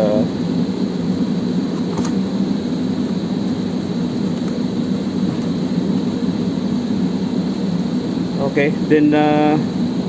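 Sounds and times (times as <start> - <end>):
machinery humming: 0.0 - 10.0.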